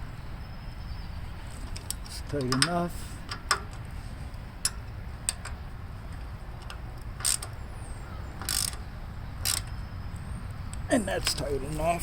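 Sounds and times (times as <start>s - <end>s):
ratchet clicking on bolts: 6.6s - 7.6s, 8.4s - 8.8s, 9.4s - 9.7s
ratchet rattle: 6.6s - 7.6s, 8.4s - 8.8s, 9.4s - 9.7s.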